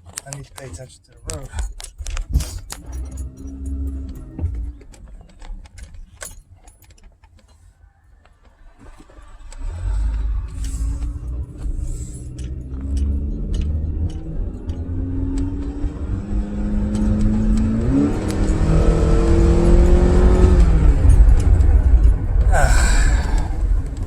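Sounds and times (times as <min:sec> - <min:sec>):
low road rumble: 0:00.0 - 0:24.0
car engine accelerating: 0:02.6 - 0:06.0, 0:08.8 - 0:24.0.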